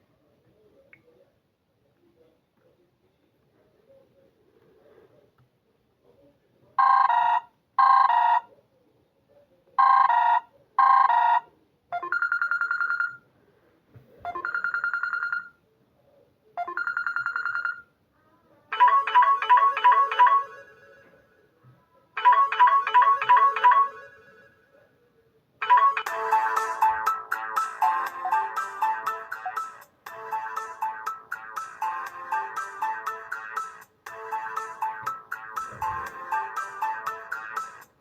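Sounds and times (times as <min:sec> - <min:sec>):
phone ringtones: 0:06.8 - 0:08.5, 0:09.8 - 0:13.2, 0:14.3 - 0:15.5, 0:16.6 - 0:17.8, 0:18.7 - 0:21.2, 0:22.2 - 0:24.7, 0:25.6 - 0:37.9.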